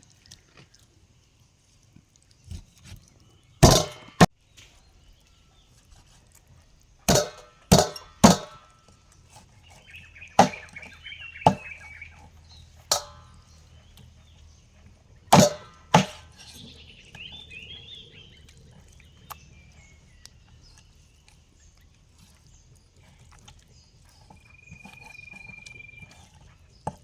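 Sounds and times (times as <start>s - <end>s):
knife chopping on wooden board: 10.4s - 10.8s, 11.5s - 11.8s, 15.3s - 16.2s
faint chirping: 16.4s - 27.0s.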